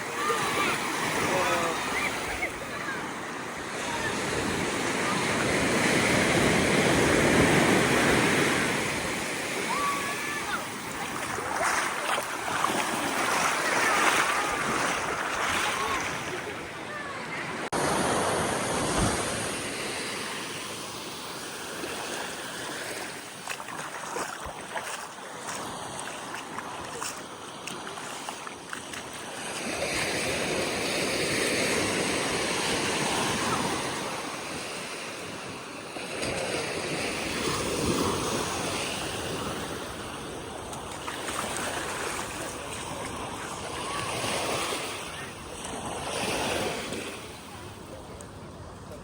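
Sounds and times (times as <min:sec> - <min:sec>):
ocean surf breaking: 0:00.0 - 0:49.0
wind on microphone: 0:17.9 - 0:19.7.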